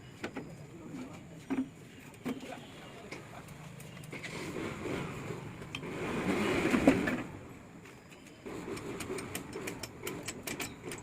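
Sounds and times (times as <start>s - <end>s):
metal clicks and rattles: 8.6s - 11.0s.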